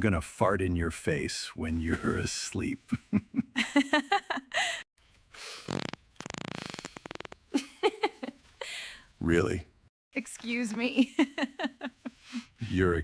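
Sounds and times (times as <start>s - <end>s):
breathy giggly vocal bursts: 5.6s - 7.4s
cartoon fart sound effect: 5.7s - 7.4s.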